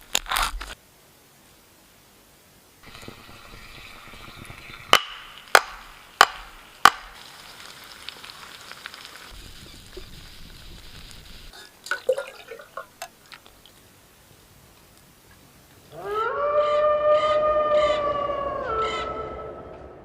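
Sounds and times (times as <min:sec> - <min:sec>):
steady hiss: 0:00.0 - 0:15.9
sharp knocks: 0:04.9 - 0:07.1.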